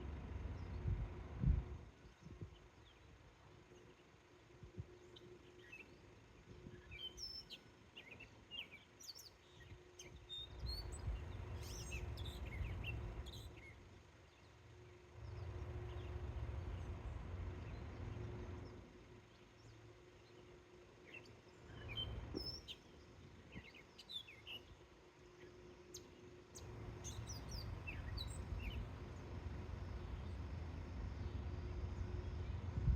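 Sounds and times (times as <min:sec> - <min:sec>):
faint steady hum: 0:00.0 - 0:32.9
birds chirping: 0:05.0 - 0:32.8
low rumble: 0:26.7 - 0:32.9.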